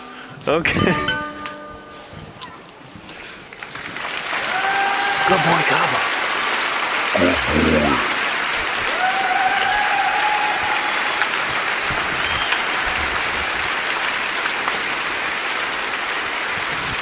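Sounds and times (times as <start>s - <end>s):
faint thin whistle-like tone: 12.2s - 12.6s.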